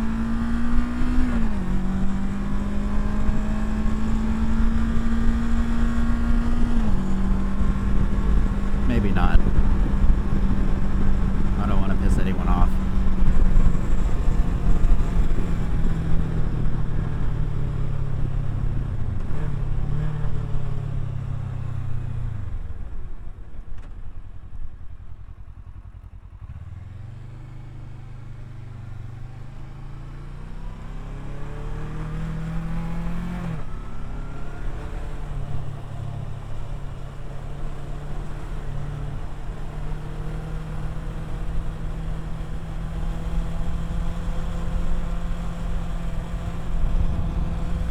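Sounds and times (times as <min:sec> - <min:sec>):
motorcycle engine while riding: 0:00.0 - 0:47.9.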